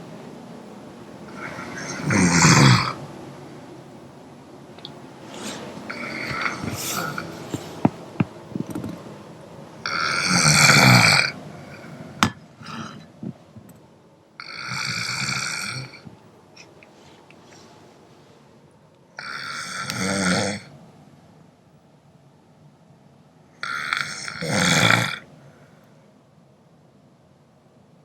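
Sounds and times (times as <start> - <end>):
person snoring: 1.3 - 3.0, 5.3 - 7.8, 9.8 - 13.2, 14.4 - 16.1, 19.2 - 20.7, 23.6 - 25.3.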